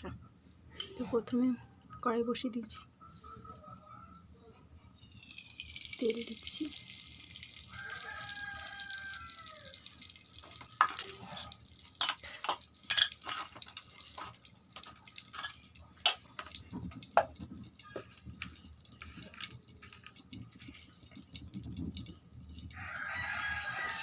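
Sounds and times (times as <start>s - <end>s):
hot oil crackling and spitting: 4.8s - 24.0s.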